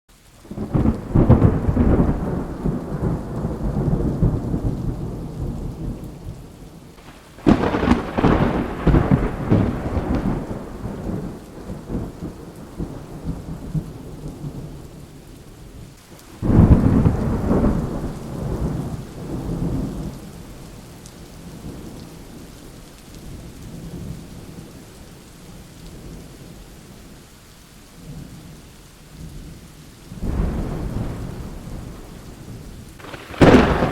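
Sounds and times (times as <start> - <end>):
steady rain falling: 0.1 - 33.9
thunder rumbling: 0.4 - 15.0, 16.3 - 20.8, 30.1 - 33.9.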